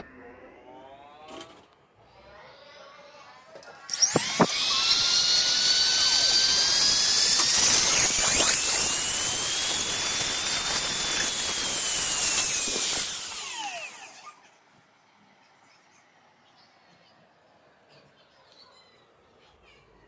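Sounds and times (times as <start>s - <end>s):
small electric motor whining: 3.9s - 14.4s.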